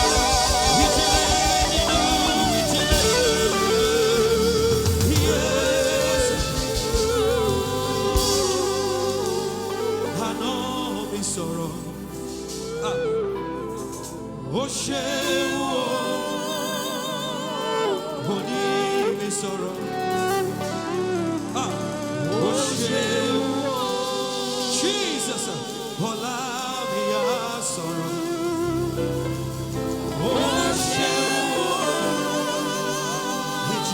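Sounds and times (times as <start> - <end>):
deep bass: 0.0 - 14.0
gospel singing with vibrato: 0.0 - 33.9
instrumental backing: 0.0 - 33.9.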